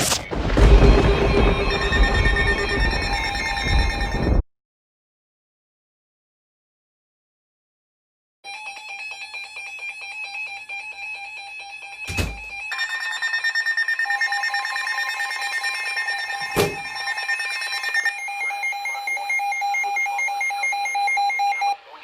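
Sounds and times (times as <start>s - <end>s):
electronic warning alarms: 0.0s - 4.4s, 8.5s - 21.8s
sharp thumps: 0.0s - 4.4s
higher alarm tone: 0.4s - 4.4s, 10.1s - 21.8s.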